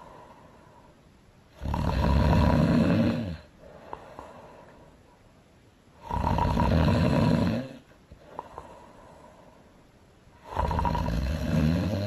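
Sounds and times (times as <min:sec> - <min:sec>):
quiet breathing: 0:00.0 - 0:12.0
person snoring loudly: 0:01.6 - 0:03.5, 0:06.0 - 0:07.8, 0:10.4 - 0:12.0.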